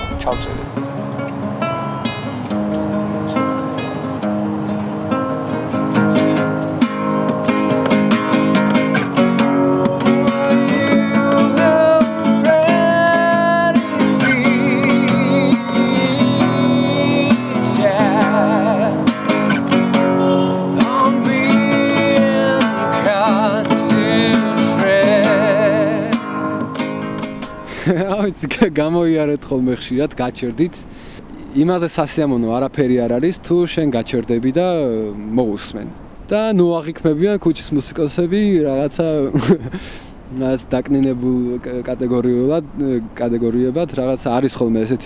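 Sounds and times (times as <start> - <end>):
acoustic guitar strumming: 0.0 - 29.9
person singing with vibrato: 10.3 - 19.2.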